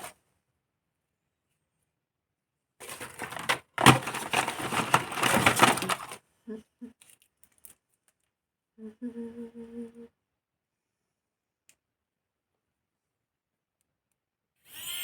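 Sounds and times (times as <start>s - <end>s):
objects rummaged through: 2.8s - 6.2s.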